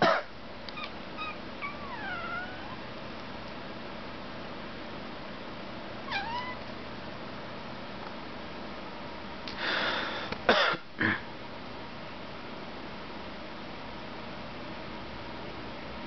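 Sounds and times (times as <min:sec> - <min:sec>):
cat meowing: 0:00.8 - 0:02.8, 0:06.0 - 0:06.7
breathy hiss: 0:09.5 - 0:10.4.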